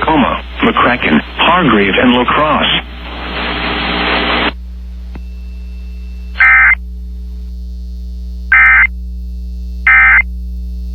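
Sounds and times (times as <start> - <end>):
radio noise hiss: 0.0 - 7.5, 8.5 - 8.9, 9.9 - 10.2
steady electrical hum: 0.0 - 10.9
shrill warbling data squawks: 6.2 - 6.8, 8.5 - 8.9, 9.9 - 10.2.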